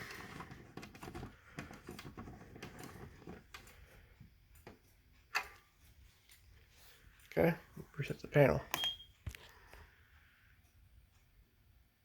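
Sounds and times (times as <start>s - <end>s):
faint clicks and rustling: 0.0s - 7.9s.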